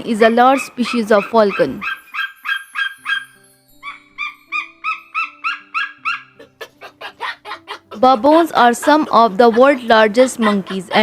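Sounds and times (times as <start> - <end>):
background music with low notes: 0.0 - 11.0
falcon calling: 0.4 - 8.4.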